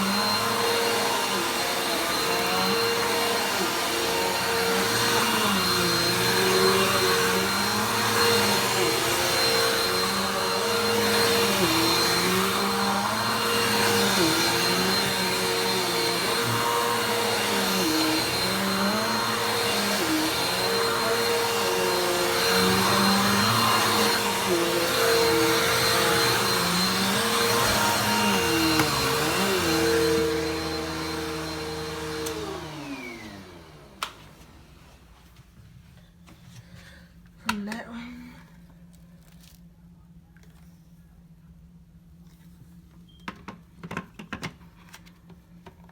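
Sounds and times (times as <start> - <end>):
vacuum cleaner running: 0.0 - 35.4.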